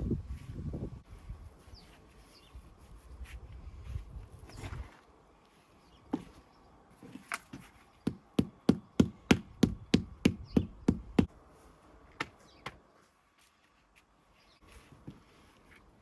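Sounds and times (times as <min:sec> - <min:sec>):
hammer knocking: 0:08.0 - 0:11.3.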